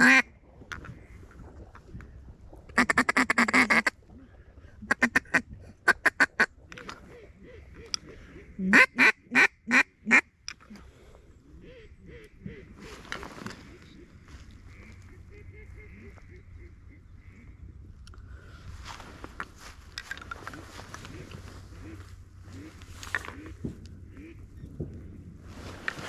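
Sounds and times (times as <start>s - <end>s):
duck call quacking: 0.0s - 0.2s, 8.7s - 10.2s
distant ducks and geese calling: 0.0s - 1.9s, 2.7s - 18.6s, 20.3s - 24.8s.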